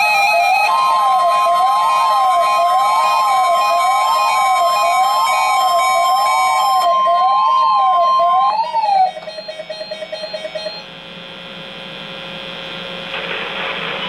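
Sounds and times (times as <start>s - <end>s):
rapid beeping: 0.0s - 10.9s
warbling alert siren: 0.0s - 10.9s
steady high alarm tone: 0.0s - 11.0s.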